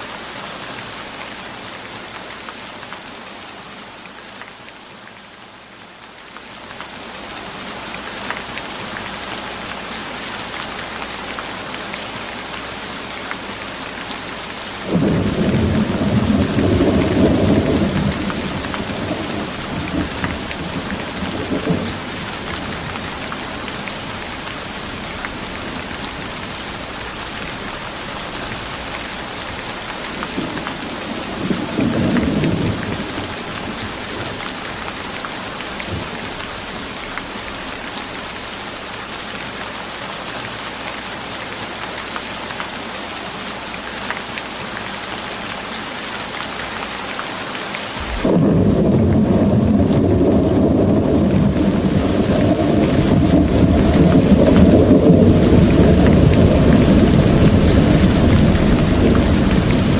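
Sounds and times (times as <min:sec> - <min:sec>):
heavy rain hiss: 0:00.0 - 0:59.9
low thunder rumbling: 0:14.9 - 0:38.2, 0:48.0 - 0:59.9.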